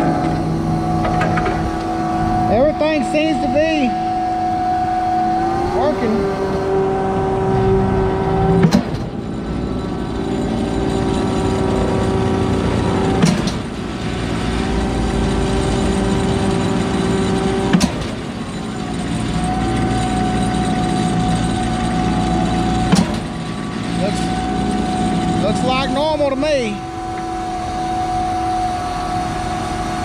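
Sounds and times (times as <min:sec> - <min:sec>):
pump clunking: 0:00.0 - 0:03.4, 0:08.6 - 0:27.8
concrete pump engine hum: 0:00.0 - 0:30.0.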